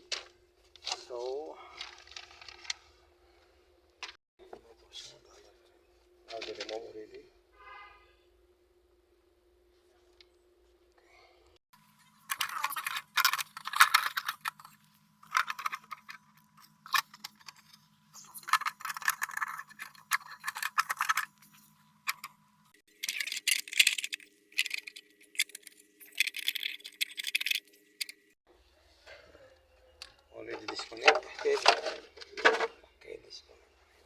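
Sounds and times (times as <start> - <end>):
plastic rattling and clicking: 11.8 - 28.2.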